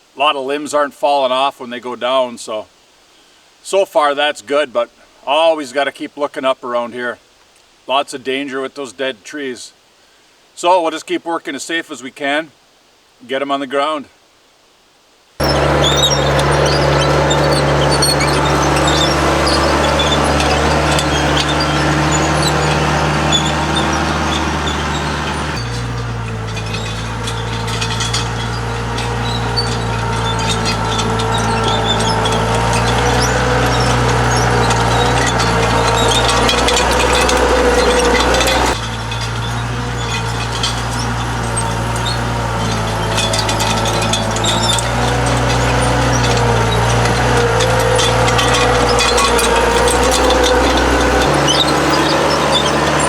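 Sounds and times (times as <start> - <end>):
loader engine running: 15.4 - 53.0
small clicks and knocks: 15.4 - 53.0.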